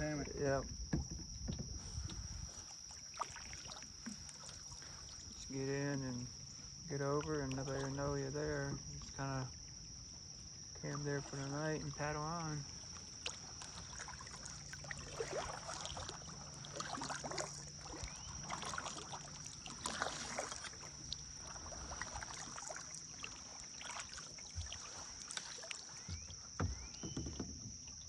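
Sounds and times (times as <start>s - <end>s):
paddle splashing in water: 0.0s - 28.0s.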